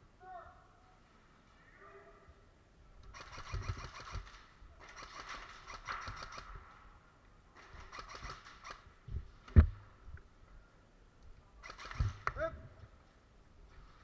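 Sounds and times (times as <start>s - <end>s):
airsoft gun rapid clicks: 3.0s - 6.6s, 7.6s - 8.9s, 11.6s - 12.4s.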